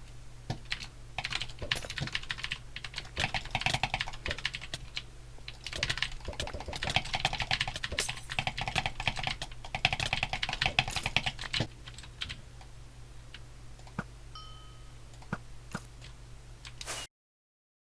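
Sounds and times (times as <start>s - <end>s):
steady low hum: 0.0s - 17.1s.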